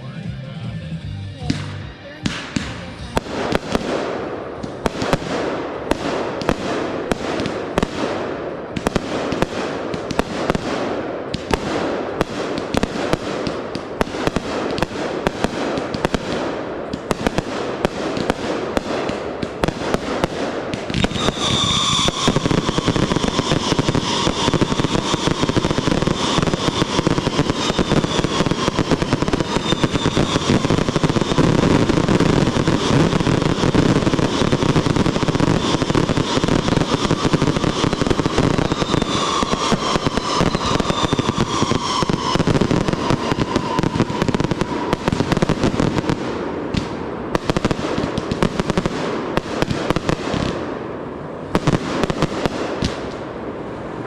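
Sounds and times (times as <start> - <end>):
fireworks launching and bursting: 1.4 - 54.0
high firework whistle: 20.8 - 46.2.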